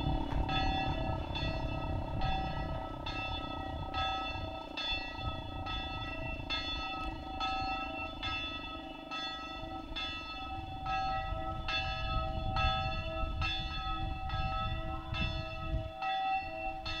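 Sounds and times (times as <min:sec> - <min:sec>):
low rumble: 0:00.0 - 0:06.8
large swinging bell ringing: 0:00.0 - 0:17.0.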